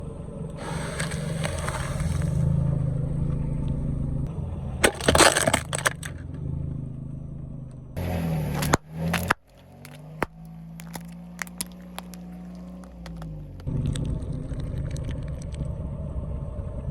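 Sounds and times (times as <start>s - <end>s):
car engine running: 0.1s - 14.5s
object cracking under tyre: 0.6s - 2.4s, 4.8s - 6.3s, 8.0s - 14.2s.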